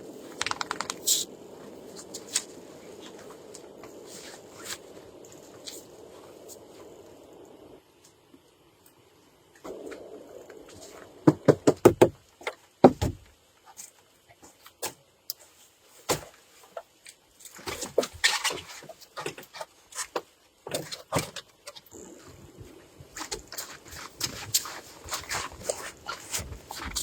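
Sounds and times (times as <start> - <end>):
scattered clicks: 0.3 - 1.3.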